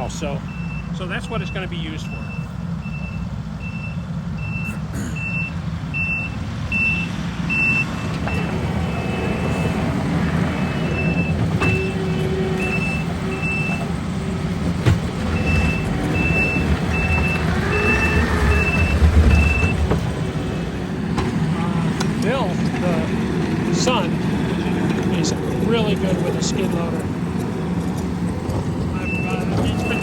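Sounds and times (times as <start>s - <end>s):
backup alarm beeping: 0.0s - 10.0s, 10.6s - 13.8s, 15.3s - 19.9s, 28.9s - 30.0s
diesel engine running: 0.0s - 30.0s.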